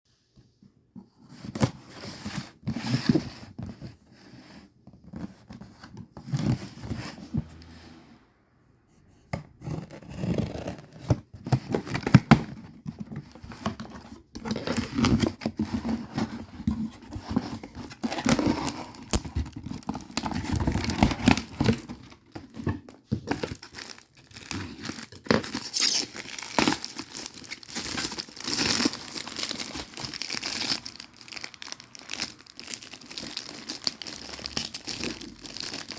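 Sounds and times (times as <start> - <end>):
packaging torn and crinkled: 17.7 - 22.2, 23.3 - 35.9.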